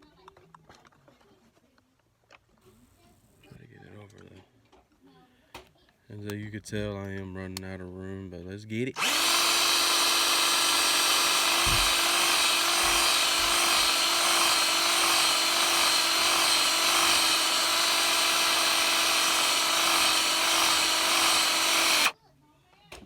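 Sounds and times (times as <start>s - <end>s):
electric drill whining: 9.0s - 22.1s.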